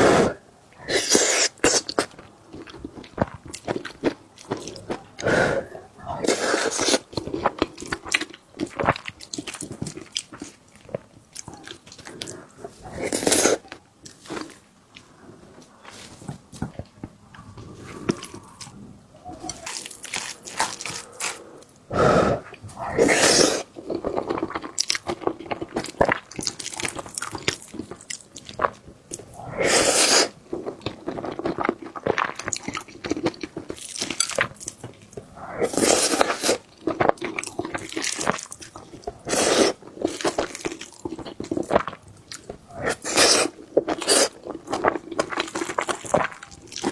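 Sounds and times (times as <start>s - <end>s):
chewing with wet mouth sounds: 0.8s - 21.9s, 22.5s - 46.9s
crunchy bites: 17.6s - 34.8s.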